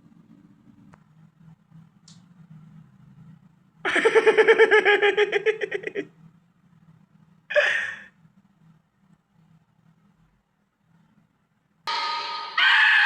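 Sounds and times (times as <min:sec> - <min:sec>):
faint low hum: 0:00.0 - 0:13.0
cartoon character laughing: 0:03.9 - 0:06.1.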